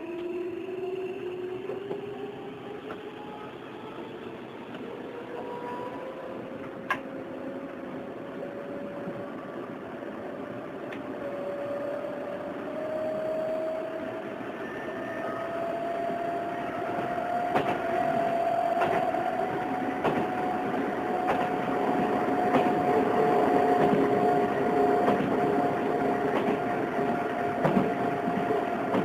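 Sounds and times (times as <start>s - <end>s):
train rolling rumble: 0.0s - 29.0s
train traction motors whining: 0.0s - 29.0s.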